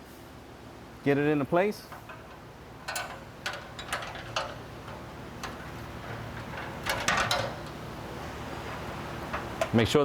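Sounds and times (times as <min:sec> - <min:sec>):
light metal clicks and taps: 0:01.9 - 0:05.7
metal parts rattling: 0:01.9 - 0:08.0.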